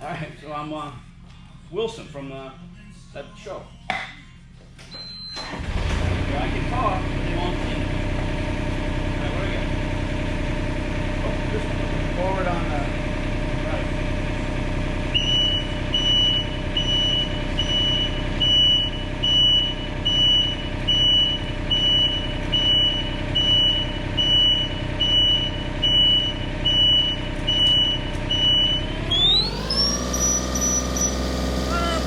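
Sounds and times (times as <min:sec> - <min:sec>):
travel alarm beeping: 0:04.9 - 0:05.6, 0:15.1 - 0:31.1
mini excavator running: 0:13.2 - 0:32.0.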